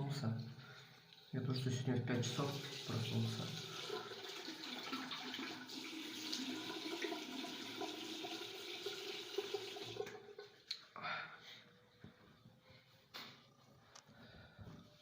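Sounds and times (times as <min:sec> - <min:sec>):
tap water running into sink: 0:02.2 - 0:10.6.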